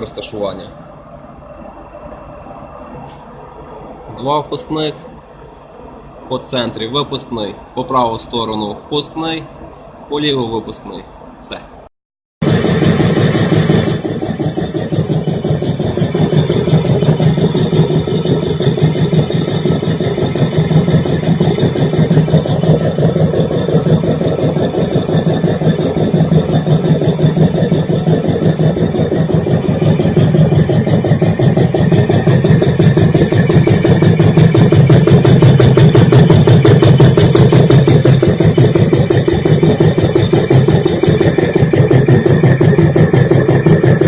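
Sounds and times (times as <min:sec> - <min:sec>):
air compressor running: 0:12.4 - 0:44.0.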